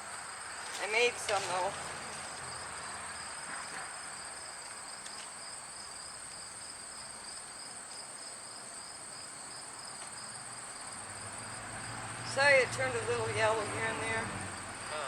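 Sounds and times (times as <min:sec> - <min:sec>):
crickets trilling: 0:00.0 - 0:15.0.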